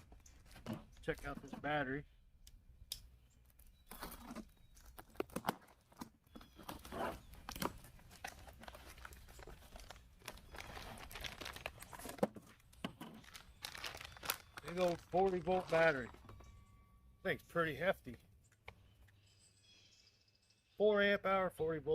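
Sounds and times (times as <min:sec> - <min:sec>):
packaging crinkling and tearing: 0:03.5 - 0:06.0, 0:06.6 - 0:16.2.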